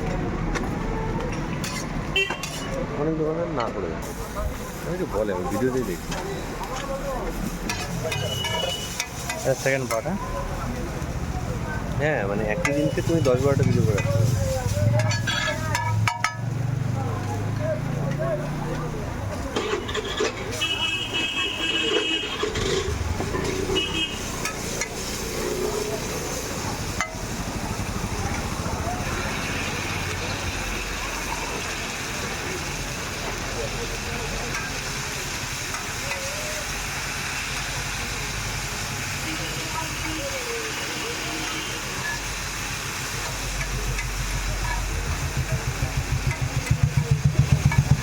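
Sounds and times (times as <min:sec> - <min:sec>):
murmur of voices: 0:00.0 - 0:48.0
street traffic: 0:00.0 - 0:48.0
high horn tooting: 0:02.1 - 0:02.7, 0:08.1 - 0:09.1, 0:19.7 - 0:24.4.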